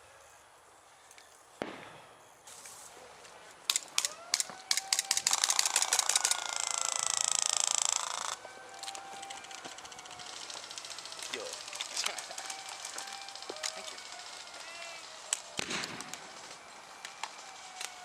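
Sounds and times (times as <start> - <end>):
airsoft guns firing: 1.6 - 2.1, 3.6 - 8.4, 9.0 - 18.0.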